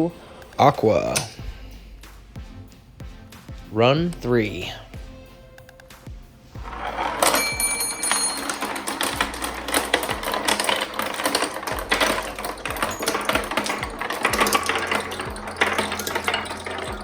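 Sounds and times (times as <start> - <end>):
marbles rolling down a track: 6.6 - 17.0.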